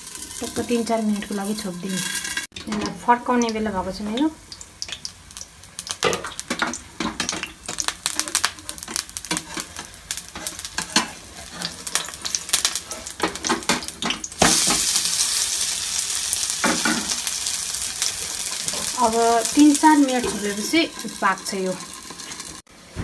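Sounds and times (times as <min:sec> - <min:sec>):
spatula scraping frying pan: 0:00.0 - 0:02.5, 0:06.2 - 0:15.6, 0:16.5 - 0:22.6
oil sizzling: 0:00.0 - 0:23.0.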